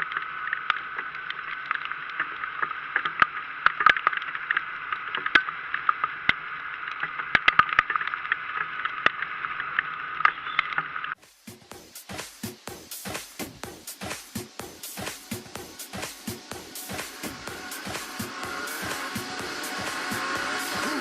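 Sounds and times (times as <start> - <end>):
raindrops ticking near microphone: 0.0 - 18.4
steady rain hiss: 11.2 - 21.0.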